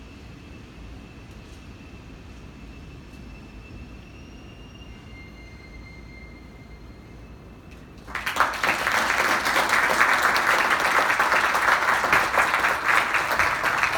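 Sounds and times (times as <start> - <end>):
audience applause: 8.1 - 13.9.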